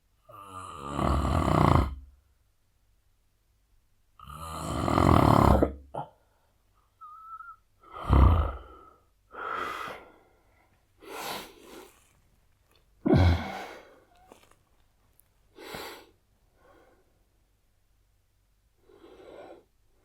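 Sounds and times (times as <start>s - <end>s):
man snoring heavily: 0.3s - 2.0s, 4.2s - 5.8s, 7.9s - 10.0s, 13.1s - 13.9s.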